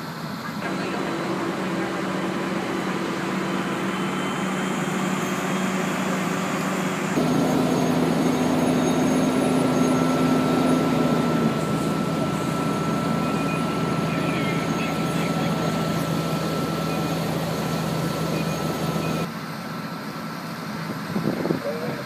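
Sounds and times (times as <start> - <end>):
fire truck engines running: 0.0 - 22.0.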